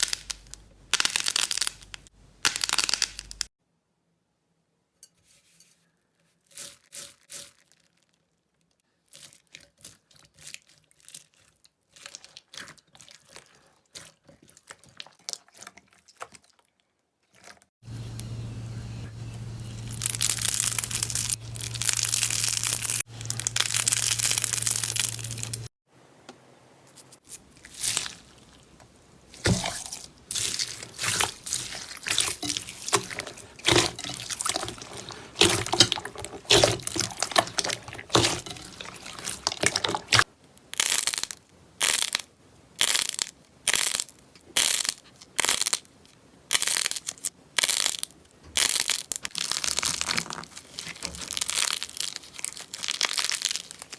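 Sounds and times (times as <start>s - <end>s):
low hum: 17.8s - 25.7s
slime squeezed by hand: 29.4s - 40.3s.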